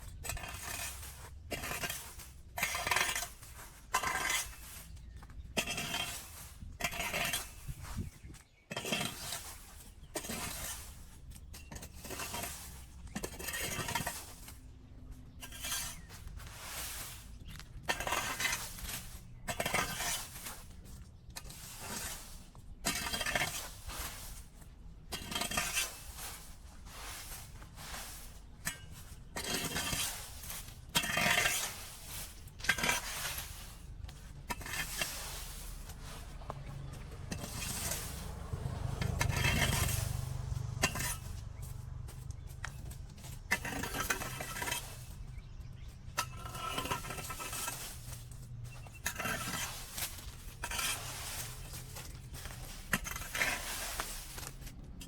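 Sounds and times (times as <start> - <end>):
hand tool clinking and scraping: 0.0 - 54.9
steady low rush: 35.2 - 43.5.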